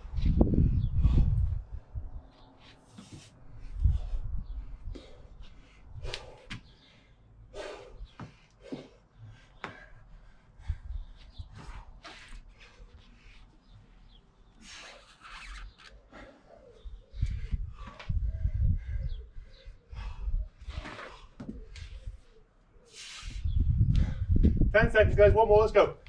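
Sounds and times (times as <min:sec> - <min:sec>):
short hissing puffs: 0:22.9 - 0:23.6.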